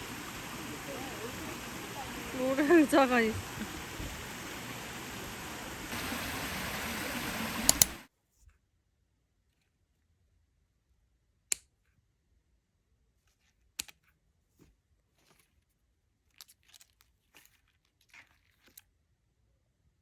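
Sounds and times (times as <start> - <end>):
sharp clicks: 7.6 - 8.0
rustling and crinkling: 13.1 - 19.0.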